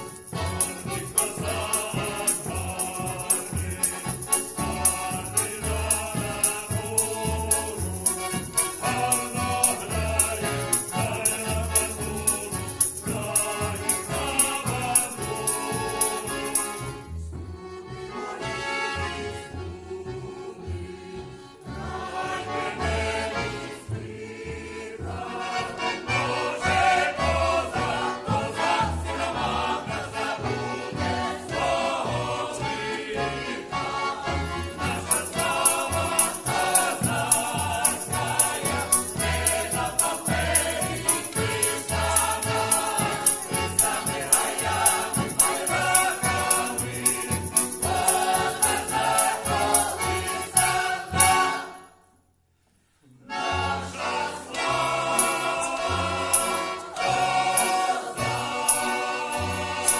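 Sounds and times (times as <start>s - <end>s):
choir singing: 0.0s - 17.0s, 17.8s - 52.0s, 53.2s - 59.9s
rhythmic accompaniment: 0.0s - 52.1s, 53.3s - 59.9s
bright jingling: 34.8s - 51.9s.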